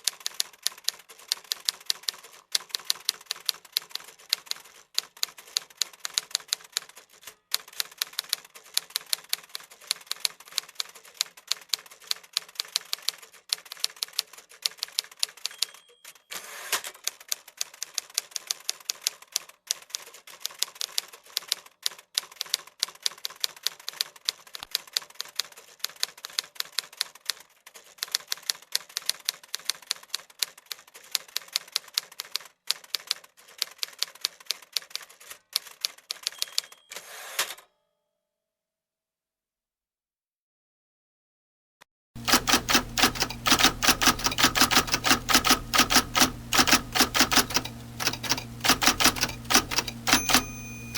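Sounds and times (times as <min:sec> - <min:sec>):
typewriter bell ring: 0:15.4 - 0:16.5, 0:36.3 - 0:37.1, 0:42.2 - 0:50.9
typewriter carriage sliding: 0:42.2 - 0:50.9
typewriter keys clacking: 0:42.2 - 0:50.9.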